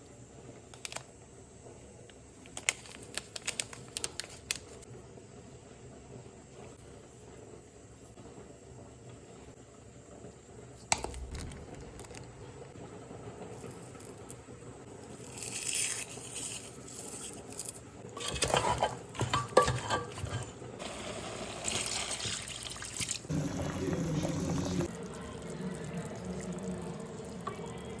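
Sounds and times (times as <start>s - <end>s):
utensil clattering: 15.2s - 20.6s
liquid pouring and splashing: 21.6s - 27.7s.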